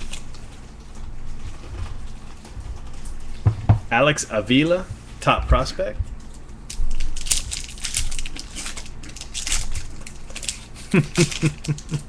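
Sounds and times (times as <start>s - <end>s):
card wrapping crinkling: 0.0s - 3.0s, 6.2s - 12.0s.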